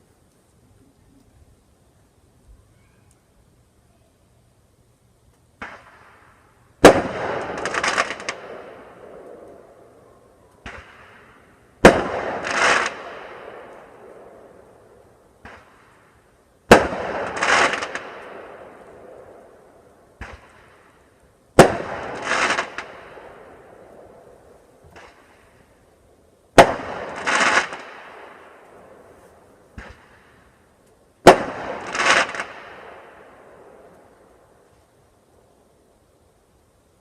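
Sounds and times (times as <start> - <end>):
fireworks bang: 5.6 - 6.2, 6.8 - 9.2, 10.6 - 14.2, 16.7 - 19.2, 20.2 - 20.9, 21.6 - 24.2, 24.8 - 25.6, 26.6 - 28.6, 29.7 - 30.4, 31.2 - 33.8
firework burst: 5.6 - 10.0, 10.6 - 25.8, 26.5 - 34.4.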